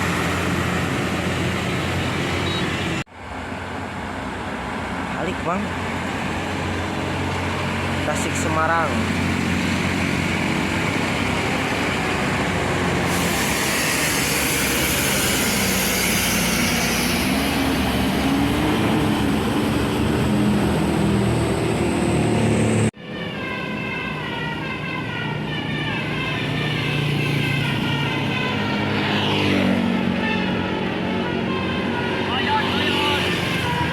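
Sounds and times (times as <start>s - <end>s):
bus engines passing: 0.0s - 33.9s
vehicle passing: 25.2s - 33.9s.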